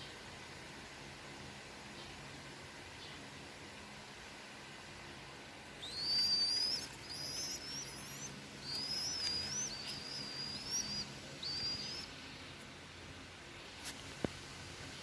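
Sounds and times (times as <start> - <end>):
bird whistling: 5.8 - 12.1.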